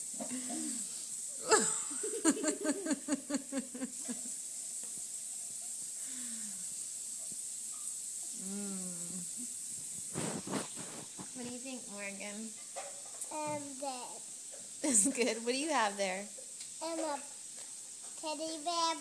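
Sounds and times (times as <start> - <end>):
steady high hiss: 0.0 - 19.0
person making pitched vocal pulses: 8.4 - 9.4.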